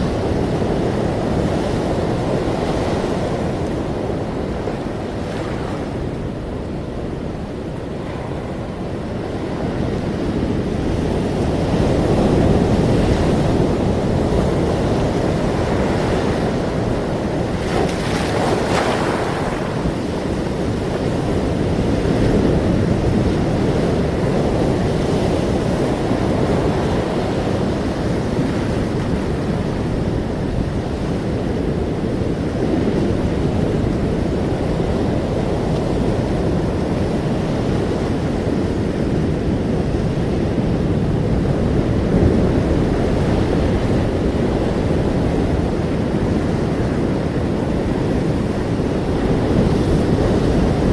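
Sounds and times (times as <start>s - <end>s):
ocean waves rushing: 0.0s - 50.9s
wave breaking: 12.7s - 21.8s.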